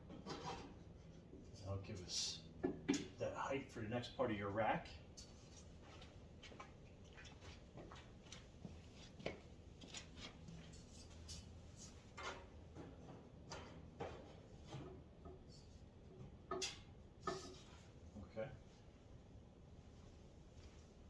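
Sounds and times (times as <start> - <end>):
tool rack parts clicking and knocking: 12.1 - 15.4.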